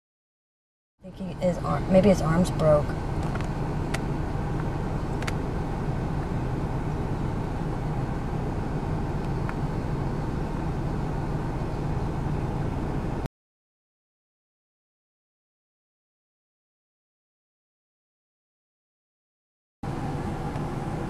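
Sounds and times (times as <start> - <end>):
vehicle engine humming: 1.0 - 13.3, 19.8 - 21.0.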